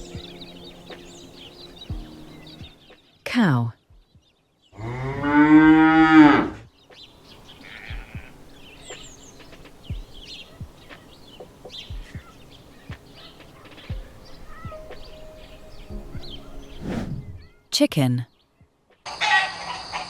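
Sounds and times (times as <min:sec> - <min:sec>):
cow mooing: 0:04.8 - 0:06.6
scattered knocks: 0:07.8 - 0:15.0.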